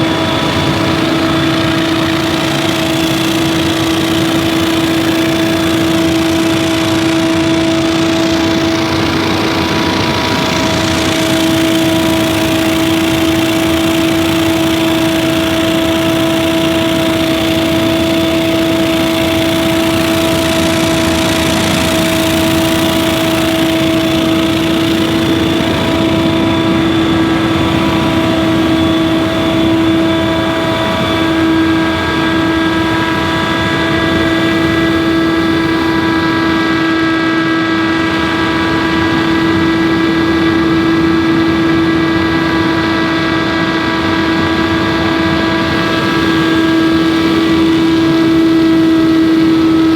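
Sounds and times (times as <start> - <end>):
leaf blower engine hum: 0.0 - 49.9.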